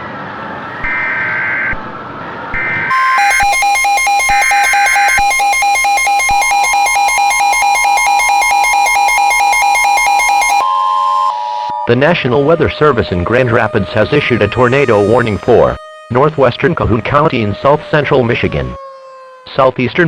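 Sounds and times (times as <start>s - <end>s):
fast-pulsing electronic alarm tone: 2.6s - 19.6s
two-pitch digital data tones: 2.9s - 15.8s.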